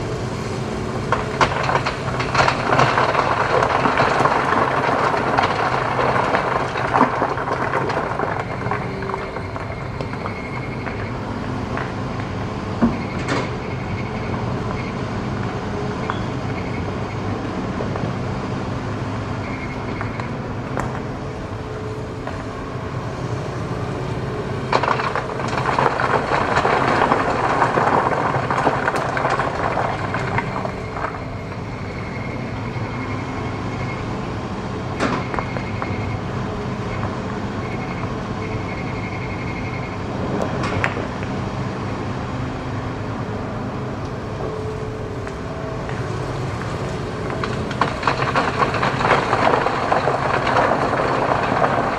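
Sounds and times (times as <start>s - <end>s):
excavator diesel engine running: 0.0s - 51.9s
rock scraping and grinding: 21.9s - 31.5s, 45.3s - 51.9s.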